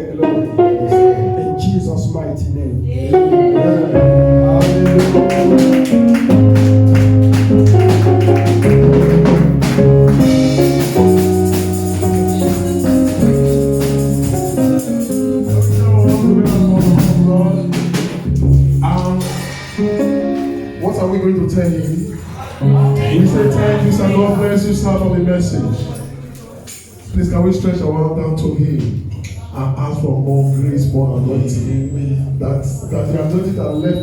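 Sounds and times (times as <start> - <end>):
bass line: 0.0 - 21.9, 22.6 - 25.9
live band music: 0.0 - 26.2
tambourine and drum beat: 4.6 - 23.8.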